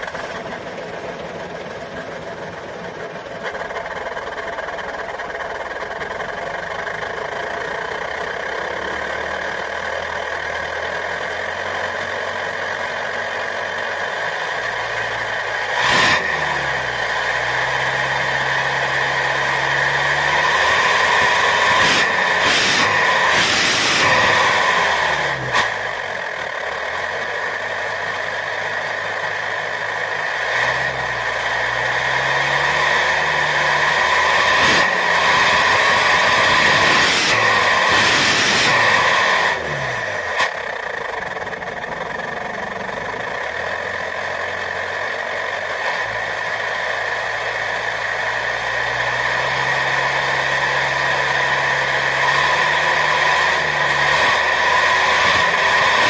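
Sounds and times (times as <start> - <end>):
engine idling and revving: 0.0 - 56.0.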